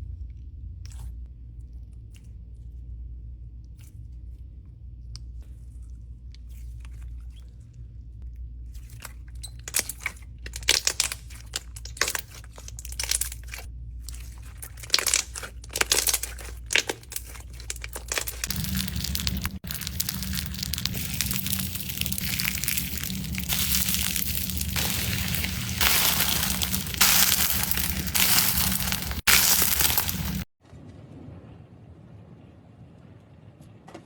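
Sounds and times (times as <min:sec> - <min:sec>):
crisp food crunching: 0:08.8 - 0:30.5
low hum: 0:16.9 - 0:30.5.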